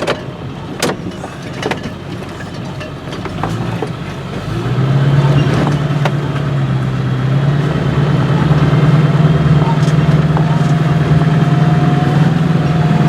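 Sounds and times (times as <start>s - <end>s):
sharp knocks and rattles: 0.0s - 6.7s
truck engine running: 0.0s - 13.0s.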